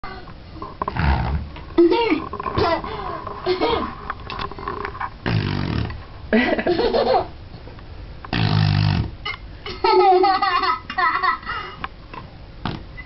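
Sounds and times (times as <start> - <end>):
fart noises with plastic cup: 0.8 - 1.6, 3.4 - 6.0, 8.3 - 9.4, 12.6 - 13.0
child laughing: 2.6 - 4.0, 6.3 - 7.3, 9.7 - 11.8.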